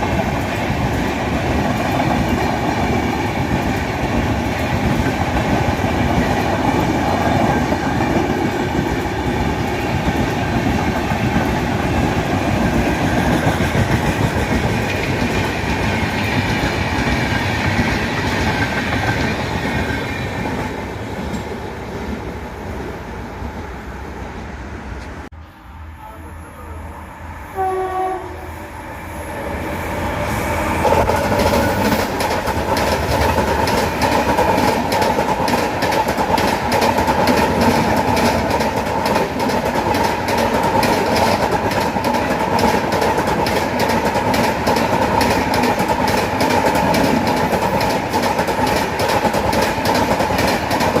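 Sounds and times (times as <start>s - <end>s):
train wheels clacking on rails: 0.0s - 21.6s, 30.2s - 51.0s
train horn blast: 27.5s - 28.6s.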